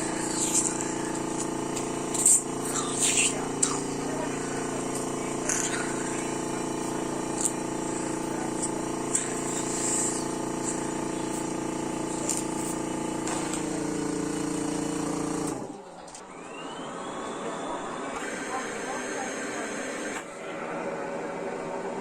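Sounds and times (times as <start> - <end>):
blower hum: 0.0 - 22.0
sharp machine clicks: 0.1 - 15.7.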